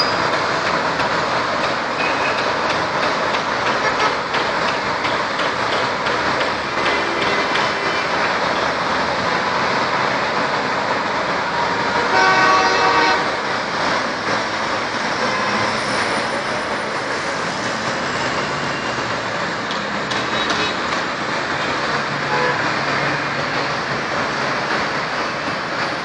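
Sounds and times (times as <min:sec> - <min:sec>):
road traffic roar: 0:00.0 - 0:26.0
vehicle horn: 0:12.0 - 0:13.4, 0:22.3 - 0:22.6.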